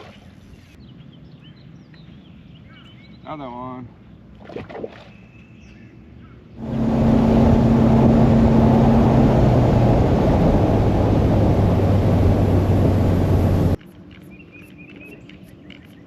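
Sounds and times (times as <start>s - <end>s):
wind: 0.0s - 16.0s
outboard motor running: 6.6s - 13.8s
water rushing: 6.6s - 13.8s.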